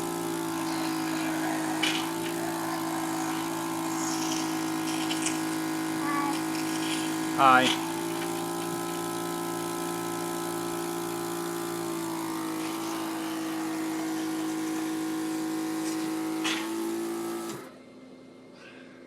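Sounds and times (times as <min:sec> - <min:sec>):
suction machine motor humming: 0:00.0 - 0:17.7.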